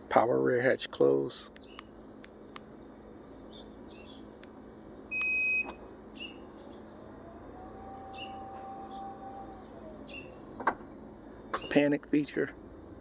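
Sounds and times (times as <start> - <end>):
loud warning beep: 5.1 - 5.8
liftgate motor whining: 5.1 - 11.8.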